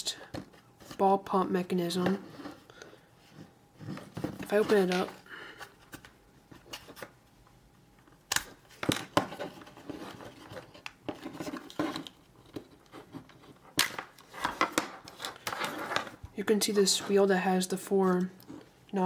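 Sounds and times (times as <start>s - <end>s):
soft rubbing of plastic: 9.3s - 16.2s.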